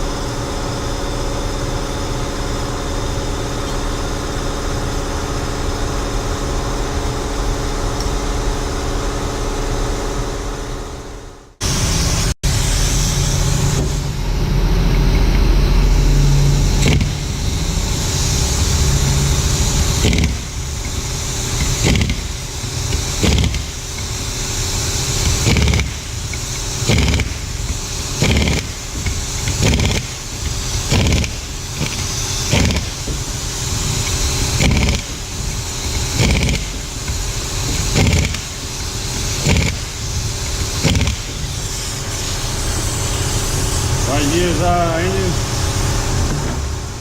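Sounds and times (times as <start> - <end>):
power tool motor running: 11.8 - 47.0.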